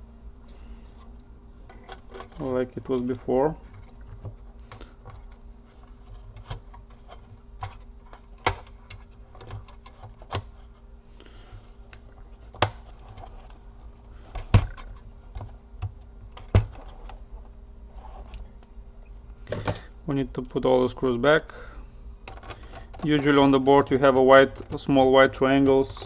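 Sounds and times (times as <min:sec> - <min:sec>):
faint steady hum: 0:00.0 - 0:26.0
clicks and knocks of laptop parts: 0:06.3 - 0:10.6, 0:12.5 - 0:13.6, 0:14.3 - 0:17.2, 0:19.5 - 0:19.9, 0:22.2 - 0:25.0.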